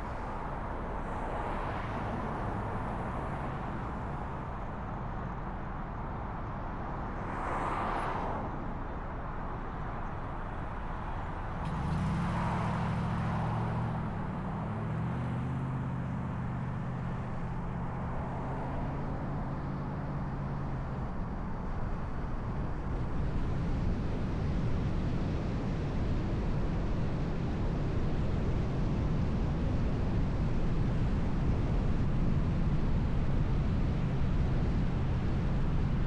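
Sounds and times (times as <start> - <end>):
road noise: 0.0 - 36.0
low engine hum: 8.7 - 36.0.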